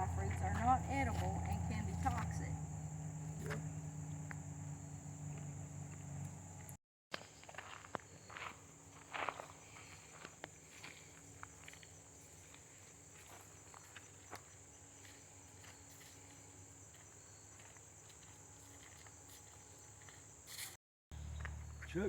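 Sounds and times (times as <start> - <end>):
footsteps on a trail: 0.0 - 2.6, 7.1 - 22.0
insects chirping chorus: 0.0 - 6.8, 7.4 - 22.0.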